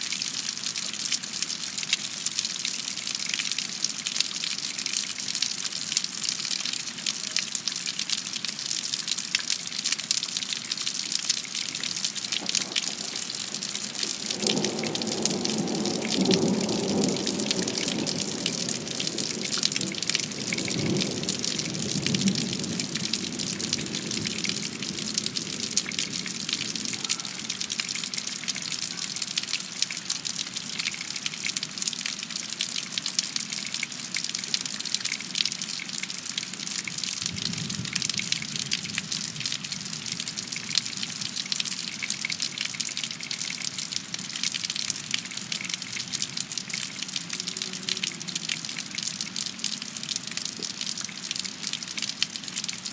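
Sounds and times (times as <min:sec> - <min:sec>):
heavy rain pouring: 0:00.0 - 0:52.9
low thunder rumble: 0:11.8 - 0:28.2, 0:37.2 - 0:40.4.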